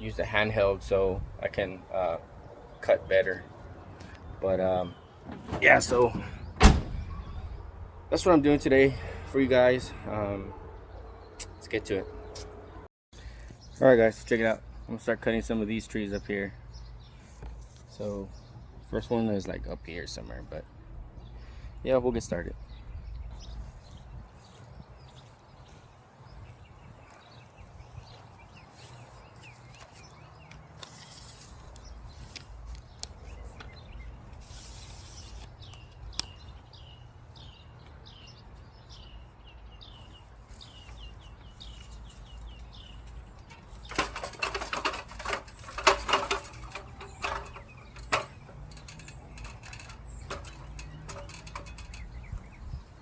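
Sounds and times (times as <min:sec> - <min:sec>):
small birds chirping: 0:13.2 - 0:53.0
rustling and crackling: 0:27.8 - 0:36.4, 0:40.0 - 0:52.7.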